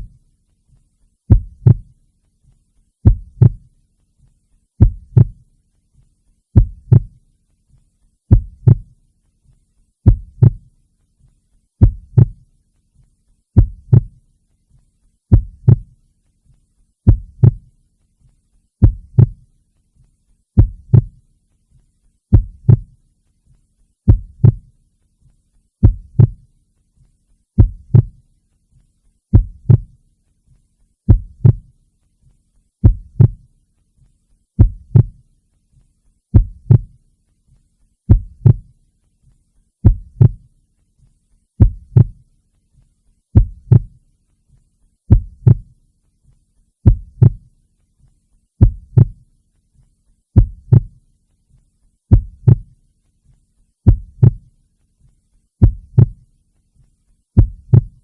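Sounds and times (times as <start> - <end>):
faint low hum: 0.0 - 58.0
heartbeat thumps: 1.3 - 2.0, 3.0 - 3.8, 4.8 - 5.5, 6.5 - 7.2, 8.3 - 9.0, 10.0 - 10.7, 11.8 - 12.5, 13.6 - 14.2, 15.3 - 16.0, 17.0 - 17.7, 18.8 - 19.5, 20.6 - 21.2, 22.3 - 23.0, 24.1 - 24.8, 25.8 - 26.5, 27.6 - 28.2, 29.3 - 30.0, 31.1 - 31.8, 32.8 - 33.5, 34.6 - 35.2, 36.3 - 37.0, 38.1 - 38.8, 39.8 - 40.5, 41.6 - 42.2, 43.4 - 44.0, 45.1 - 45.8, 46.8 - 47.5, 48.6 - 49.2, 50.4 - 51.0, 52.1 - 52.8, 53.8 - 54.5, 55.6 - 56.3, 57.4 - 58.0.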